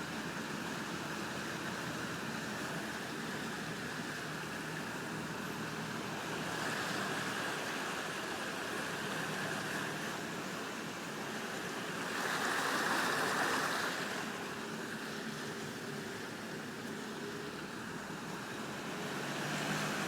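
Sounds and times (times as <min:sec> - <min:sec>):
floodwater rushing: 0:00.2 - 0:20.0.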